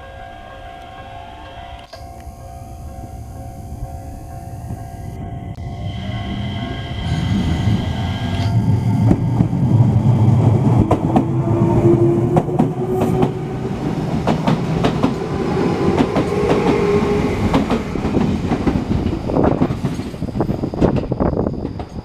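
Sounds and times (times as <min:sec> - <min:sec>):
train wheels clacking over rail joints: 0:12.3 - 0:22.0.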